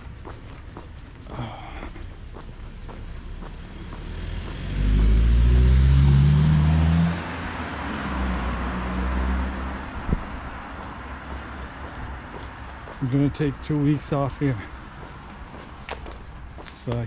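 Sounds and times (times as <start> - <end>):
car accelerating past: 3.4 - 10.2.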